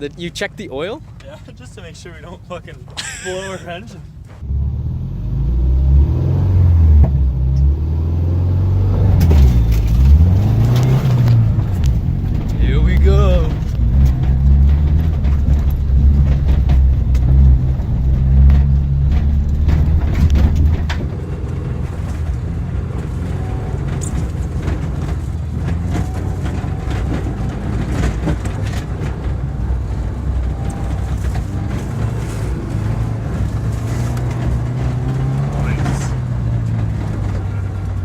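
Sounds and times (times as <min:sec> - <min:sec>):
car engine running: 0:03.3 - 0:38.0
clicks and knocks: 0:09.2 - 0:22.4.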